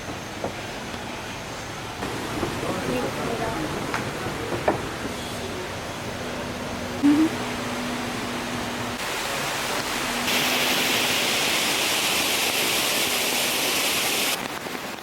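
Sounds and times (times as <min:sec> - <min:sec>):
hissing outdoor ambience: 0:00.0 - 0:15.0.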